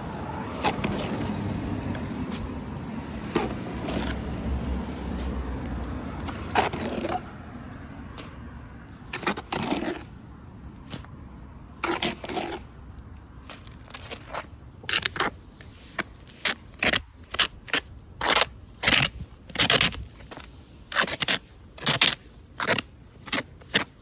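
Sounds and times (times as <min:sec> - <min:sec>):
hand tools scraping stone: 0:00.5 - 0:02.5, 0:03.2 - 0:04.4, 0:06.3 - 0:07.4, 0:09.1 - 0:10.2, 0:11.8 - 0:12.8, 0:13.5 - 0:24.0.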